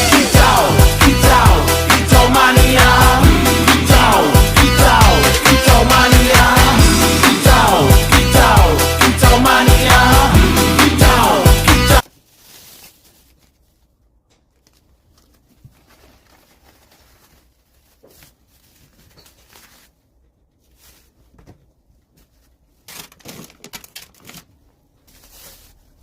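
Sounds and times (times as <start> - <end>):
faint rustling and crinkling: 12.0 - 26.0.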